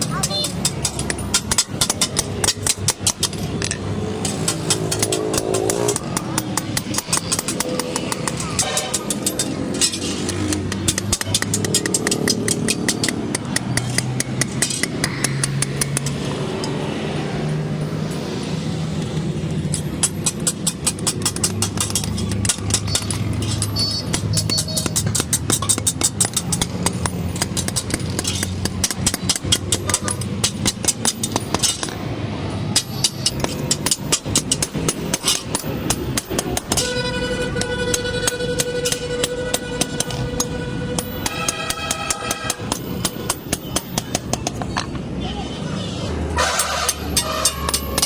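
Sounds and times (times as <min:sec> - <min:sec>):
metallic ring: 0:19.7 - 0:32.0.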